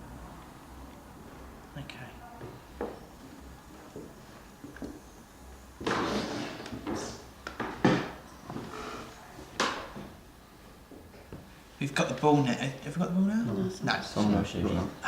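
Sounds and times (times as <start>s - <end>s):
hard objects knocking and clattering: 5.8s - 8.3s.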